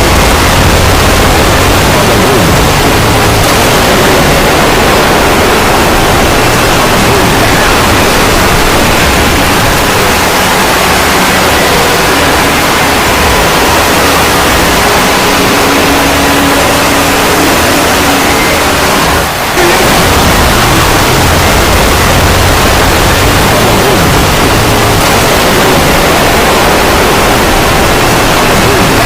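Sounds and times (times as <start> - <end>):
loud static hiss: 0.0 - 29.0.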